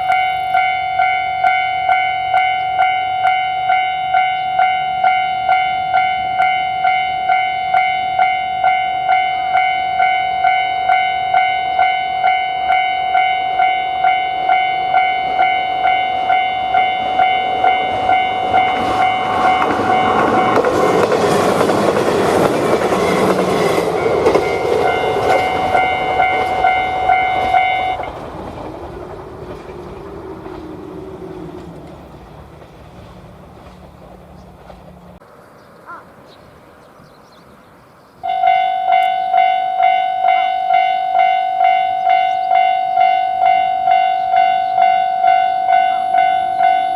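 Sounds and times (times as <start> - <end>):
electronic crossing bell ringing: 0.0 - 21.0, 23.9 - 28.1, 38.2 - 46.9
train wheels clicking over rails: 12.8 - 35.2.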